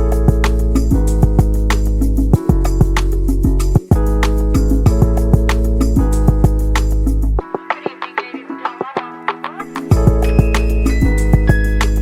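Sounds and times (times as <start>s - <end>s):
deep bass: 0.0s - 7.4s, 9.9s - 12.0s
plucked notes background music: 0.0s - 12.0s.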